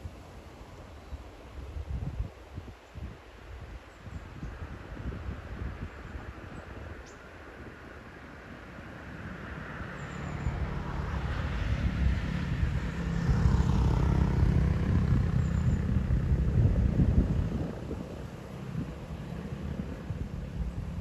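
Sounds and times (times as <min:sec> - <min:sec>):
car passing by: 0:08.3 - 0:21.0.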